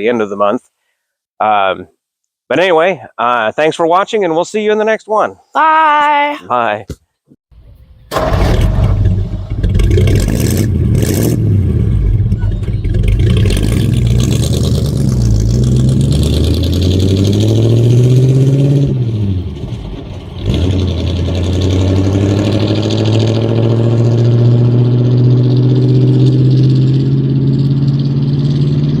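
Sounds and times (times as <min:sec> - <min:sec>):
vehicle engine accelerating: 0:08.1 - 0:29.0.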